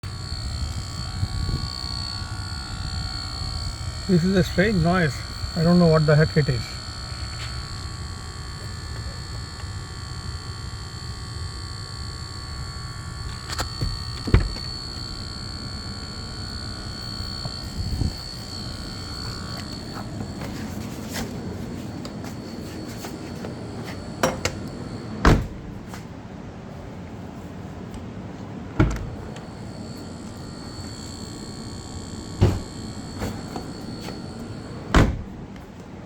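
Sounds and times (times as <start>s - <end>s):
high-pitched electronic buzz: 0.0s - 25.9s, 28.8s - 35.5s.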